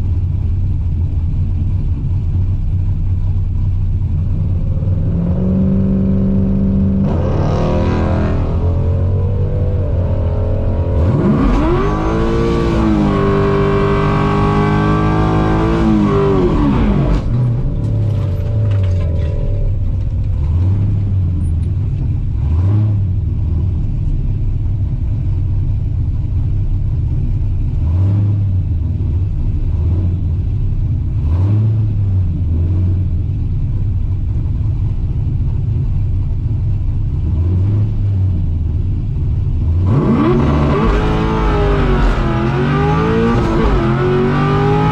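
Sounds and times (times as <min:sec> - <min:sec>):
uneven engine idle: 0:00.0 - 0:04.7, 0:23.0 - 0:31.2, 0:32.2 - 0:37.3, 0:38.0 - 0:39.8
car engine revving high: 0:04.3 - 0:19.8, 0:22.4 - 0:23.8, 0:39.6 - 0:44.9.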